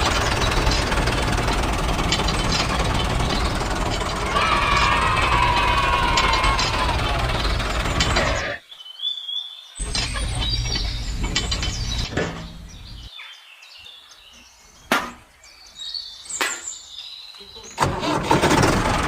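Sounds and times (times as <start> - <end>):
machine running: 0.0 - 8.6, 9.8 - 13.1.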